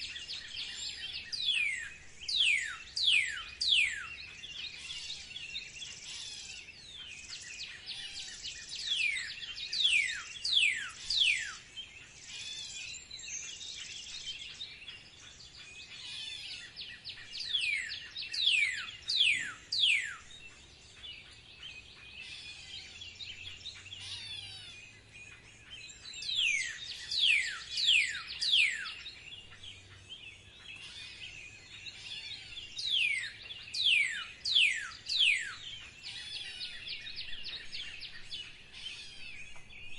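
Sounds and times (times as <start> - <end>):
songbird singing: 0.0 - 39.9.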